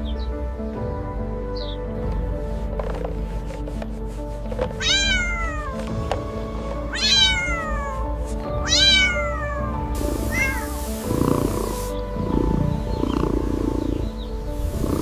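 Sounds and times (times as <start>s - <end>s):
background music: 0.0s - 15.0s
cat meowing: 4.8s - 5.8s, 6.9s - 10.8s.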